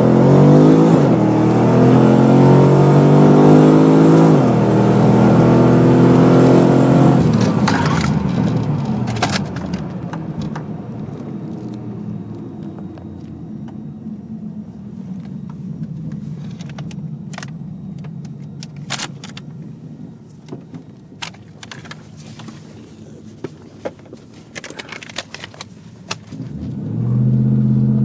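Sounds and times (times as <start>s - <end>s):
car engine idling: 7.2s - 28.0s.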